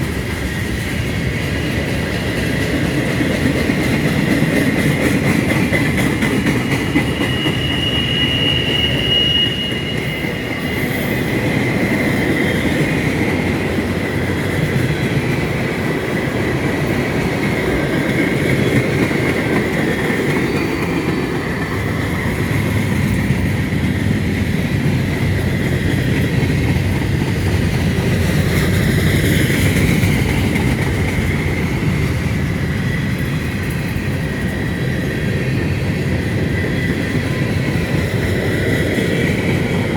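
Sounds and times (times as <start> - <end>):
train wheels rumbling on rail: 0.0 - 39.9
steel wheel squeal: 6.0 - 12.6.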